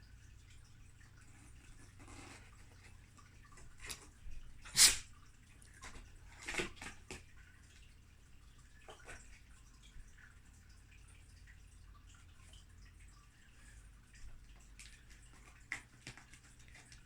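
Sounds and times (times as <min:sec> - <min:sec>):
kittens scratching cardboard: 0:01.3 - 0:03.0.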